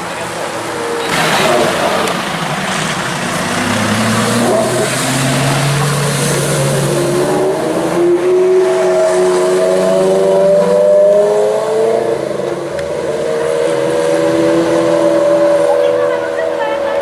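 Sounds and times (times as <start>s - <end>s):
sports car engine accelerating: 0.0s - 17.0s.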